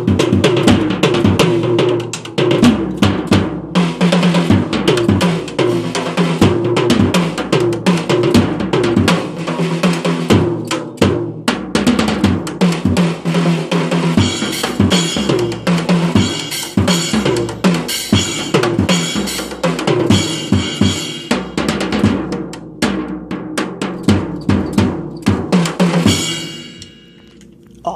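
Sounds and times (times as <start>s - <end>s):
drum kit fast fills: 0.0s - 27.1s
cymbals: 3.8s - 11.2s, 12.6s - 22.2s, 23.9s - 27.9s.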